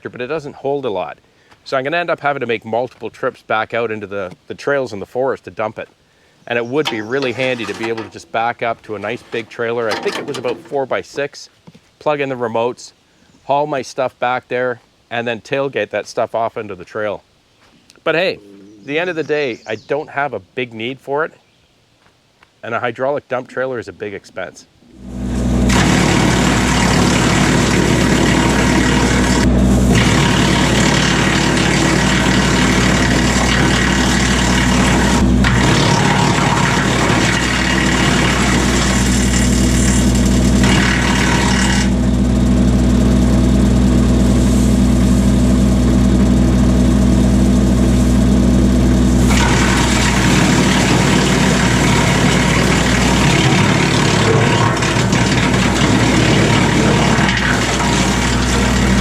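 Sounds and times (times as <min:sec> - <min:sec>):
tractor engine at high revs: 0:06.8 - 0:10.8, 0:24.9 - 0:59.0.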